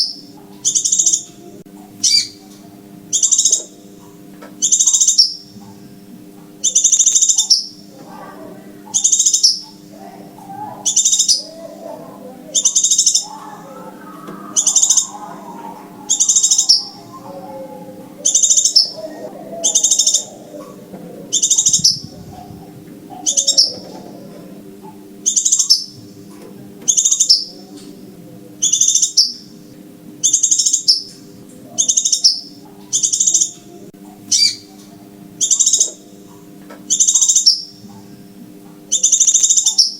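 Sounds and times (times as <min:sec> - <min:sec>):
faint murmur: 0:00.0 - 0:39.9
low hum: 0:09.8 - 0:28.6
high sharp bird call: 0:12.5 - 0:24.2.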